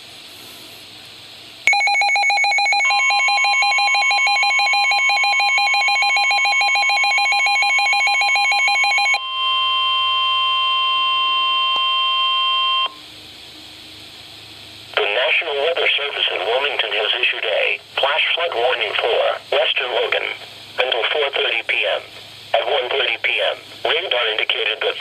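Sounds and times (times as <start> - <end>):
electronic alarm warbling: 1.7 - 13.0
steady warning alarm tone: 1.7 - 13.1.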